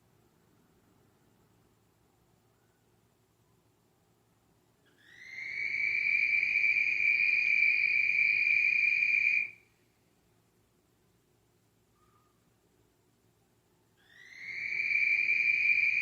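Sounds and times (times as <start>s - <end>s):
creature's high whistling call: 5.0s - 9.6s, 14.1s - 16.0s.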